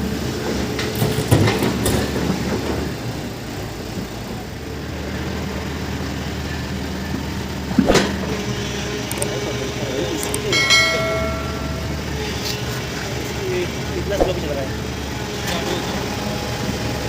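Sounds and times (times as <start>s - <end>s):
diesel machinery droning: 2.2s - 17.0s
sharp metal clanks: 10.3s - 12.4s.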